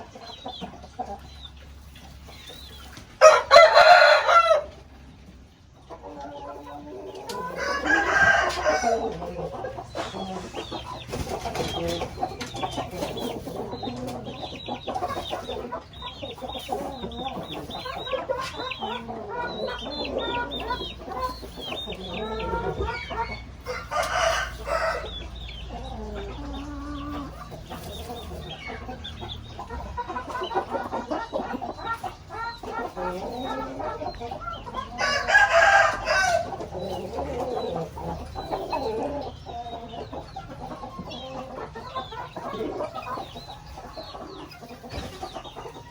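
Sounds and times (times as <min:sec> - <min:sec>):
chickens clucking: 0:00.0 - 0:45.9
rooster crowing: 0:03.2 - 0:04.7, 0:07.5 - 0:09.1, 0:23.6 - 0:25.2, 0:35.0 - 0:36.6.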